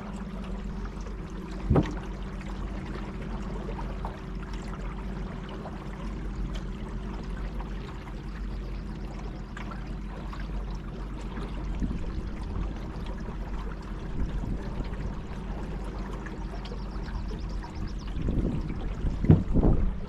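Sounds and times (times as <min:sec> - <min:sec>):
low hum: 0:00.0 - 0:20.0
river water splashing: 0:00.0 - 0:20.0.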